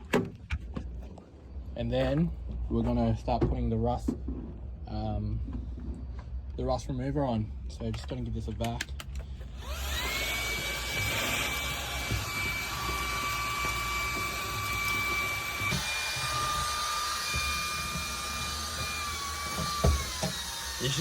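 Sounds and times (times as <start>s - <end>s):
vacuum cleaner running: 9.6s - 21.0s.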